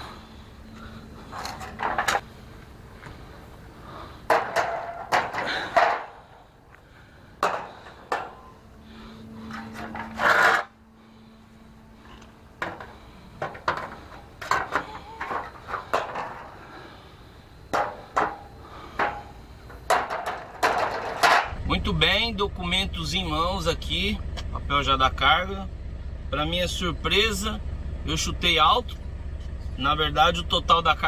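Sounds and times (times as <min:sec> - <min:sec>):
faint steady hum: 0:00.0 - 0:31.0
trailer slats knocking and clattering: 0:04.3 - 0:06.4, 0:07.4 - 0:08.5, 0:12.6 - 0:16.6, 0:17.7 - 0:21.6
loud scrape: 0:09.4 - 0:10.8.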